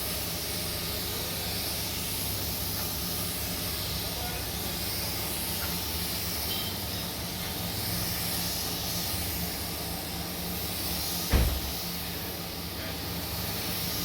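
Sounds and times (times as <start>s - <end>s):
spray gun hissing: 0.0s - 14.0s
thump: 11.2s - 11.8s.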